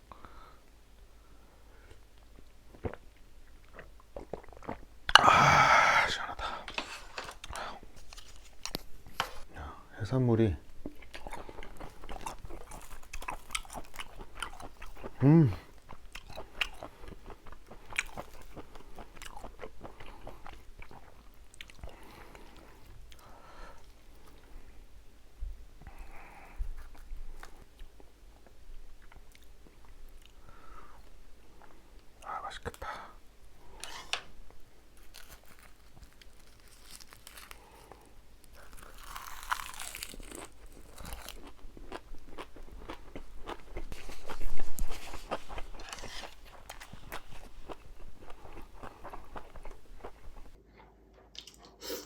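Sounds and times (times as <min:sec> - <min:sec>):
chewing and biting food: 0:10.8 - 0:24.5, 0:35.0 - 0:51.8.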